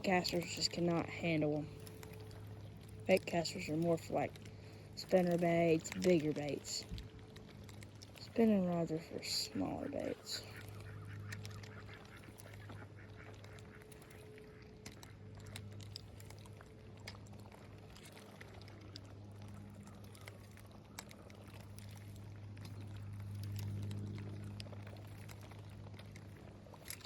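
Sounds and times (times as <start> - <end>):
low hum: 0.0 - 27.0
small clicks: 10.4 - 27.0.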